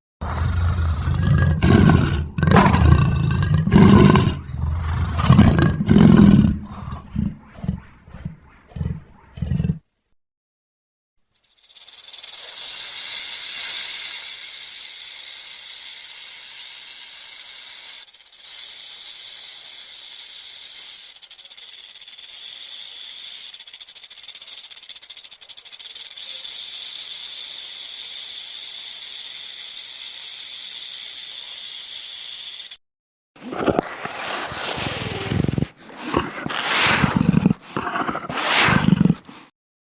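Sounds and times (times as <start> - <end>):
creature low rough calls: 0.2 - 9.9, 33.4 - 39.5
creature high hiss: 33.4 - 39.5.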